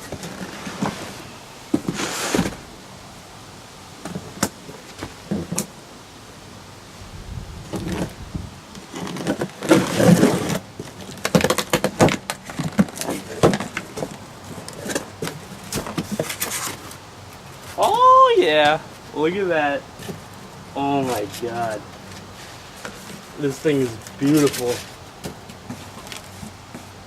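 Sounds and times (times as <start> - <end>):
cardboard box rustling and scraping: 0.0 - 2.6, 8.8 - 17.8, 21.0 - 27.0.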